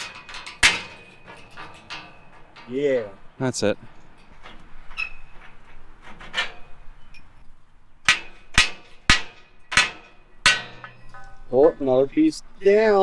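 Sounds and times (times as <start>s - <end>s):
hammer striking metal: 8.1s - 12.1s.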